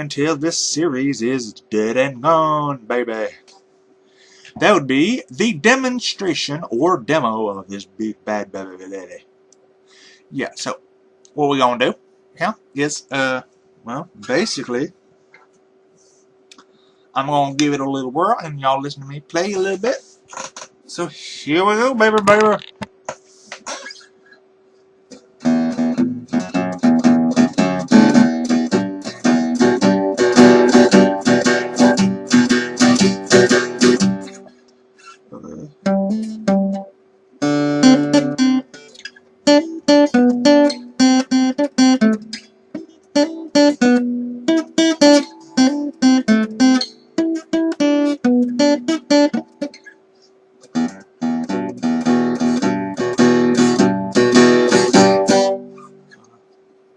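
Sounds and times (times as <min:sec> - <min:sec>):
faint steady hum: 0:00.0 - 0:56.9
guitar picked and strummed: 0:04.2 - 0:09.0, 0:25.2 - 0:35.2, 0:35.8 - 0:50.0, 0:50.6 - 0:56.4.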